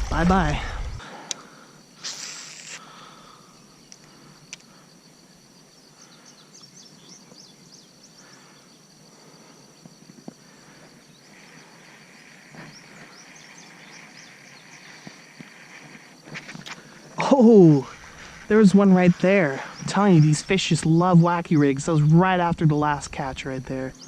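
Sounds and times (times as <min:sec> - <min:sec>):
high insect drone: 0:00.0 - 0:24.0
steady insect buzz: 0:00.0 - 0:24.0
faint ticks: 0:03.9 - 0:04.8, 0:11.3 - 0:17.0.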